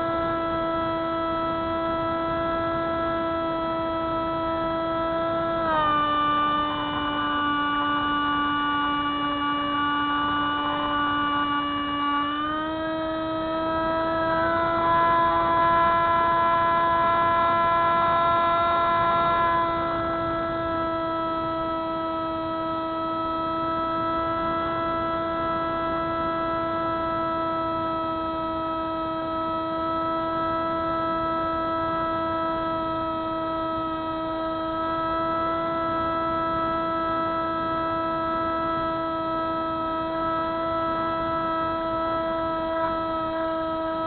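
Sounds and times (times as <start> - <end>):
model plane motor whine: 0.0 - 44.0.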